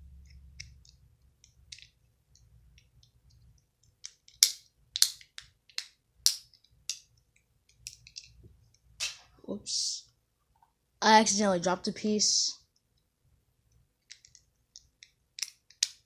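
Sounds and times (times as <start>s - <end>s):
plastic fidget cube clicking: 3.9s - 7.0s, 14.0s - 16.0s.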